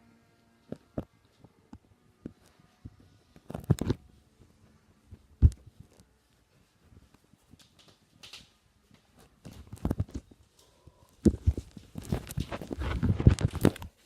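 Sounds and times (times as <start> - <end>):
faint rustling: 0.8 - 14.0.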